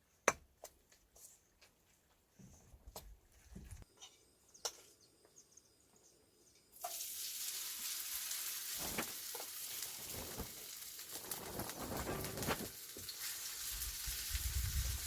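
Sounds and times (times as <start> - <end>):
pancake sizzling in oil: 6.7 - 15.0.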